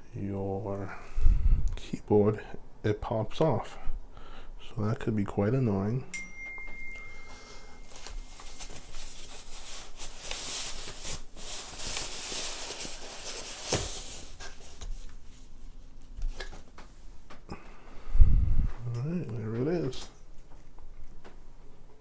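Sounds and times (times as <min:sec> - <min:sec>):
packaging rustling: 0:07.2 - 0:15.4.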